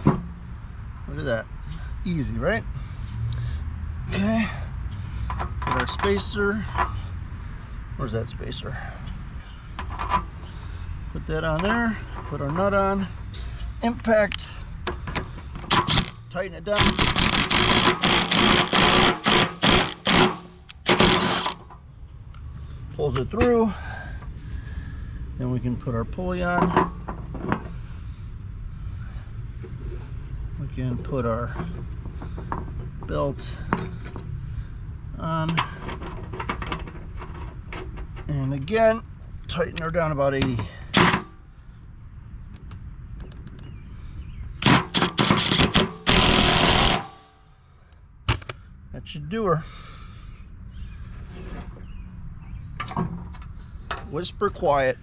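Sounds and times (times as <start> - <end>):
impact wrench hammering: 16.8 - 21.6, 44.6 - 47.3, 48.3 - 48.6.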